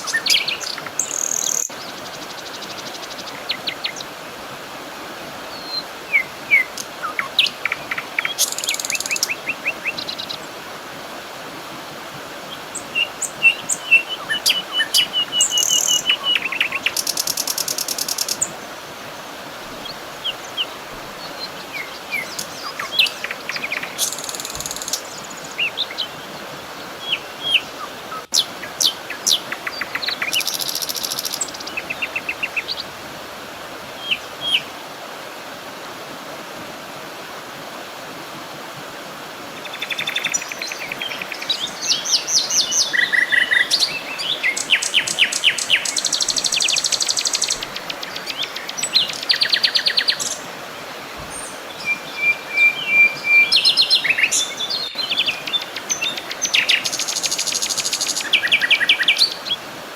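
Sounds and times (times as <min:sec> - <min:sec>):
birds singing and chirping: 0:00.0 - 0:04.1, 0:12.7 - 0:18.6, 0:19.7 - 0:32.9, 0:39.7 - 0:50.5, 0:51.1 - 0:59.6
background hiss: 0:00.0 - 0:59.9.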